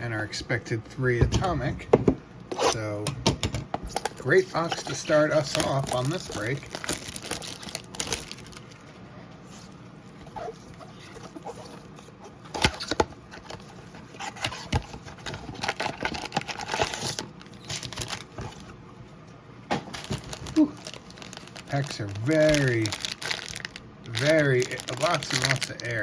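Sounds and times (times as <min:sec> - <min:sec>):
foil wrappers crinkling: 0:04.0 - 0:11.7, 0:12.5 - 0:18.8, 0:19.8 - 0:26.0.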